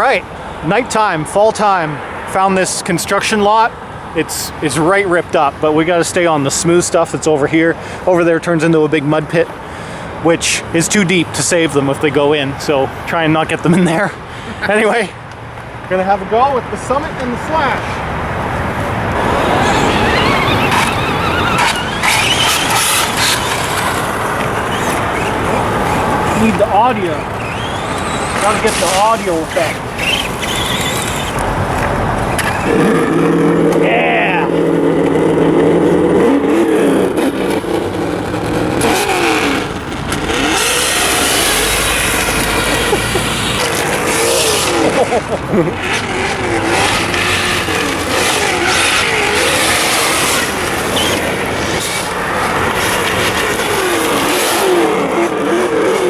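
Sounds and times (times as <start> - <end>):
tyres on gravel: 15.7 - 56.0
electric motor whining: 19.1 - 26.6
tyres hissing over gravel: 27.1 - 31.3.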